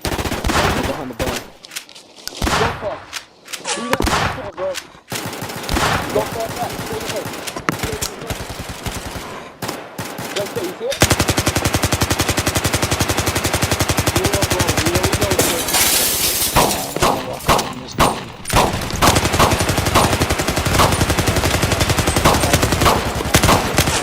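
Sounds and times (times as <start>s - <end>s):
automatic gunfire: 0.0s - 3.2s, 3.9s - 15.8s, 16.4s - 24.0s
single gunshots: 2.2s - 8.4s, 14.3s - 21.3s, 22.2s - 24.0s.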